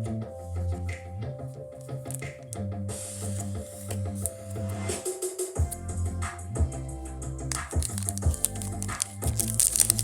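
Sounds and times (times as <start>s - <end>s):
music with percussive beat and bass: 4.7s - 8.4s.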